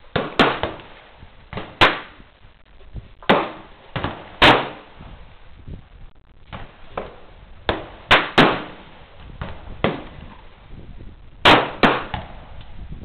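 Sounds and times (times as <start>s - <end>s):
gunshots: 0.1s - 0.9s, 1.6s - 2.2s, 3.2s - 5.0s, 7.7s - 10.2s, 11.4s - 12.4s.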